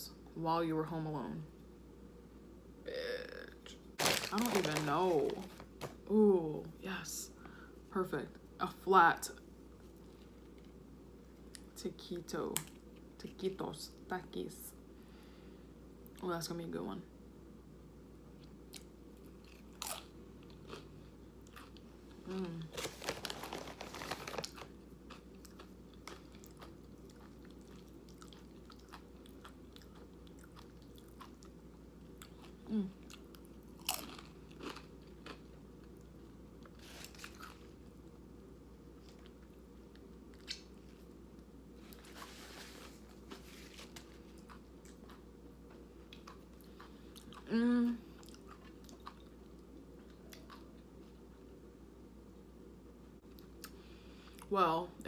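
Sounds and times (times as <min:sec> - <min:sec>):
person crunching chips: 0:04.0 - 0:06.0, 0:19.4 - 0:20.9, 0:21.5 - 0:31.5, 0:32.2 - 0:35.5, 0:36.8 - 0:37.8.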